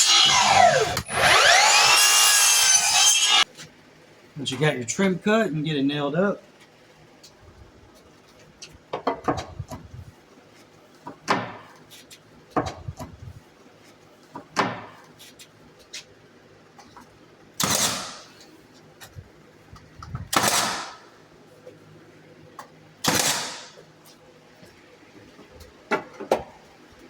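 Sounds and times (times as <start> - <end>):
nails being driven into wood: 17.6 - 18.3, 20.3 - 21.0, 23.0 - 23.8.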